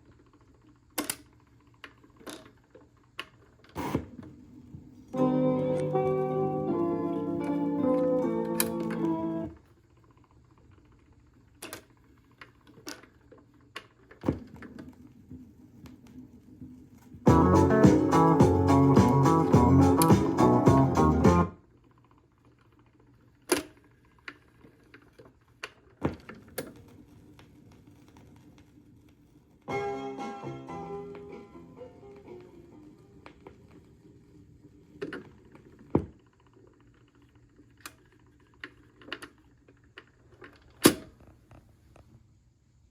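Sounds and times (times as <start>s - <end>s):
record changer clicking: 5.1s - 9.6s, 17.3s - 21.5s
music from record: 5.2s - 9.5s, 17.3s - 21.6s, 29.7s - 33.2s
record groove noise: 17.2s - 21.6s.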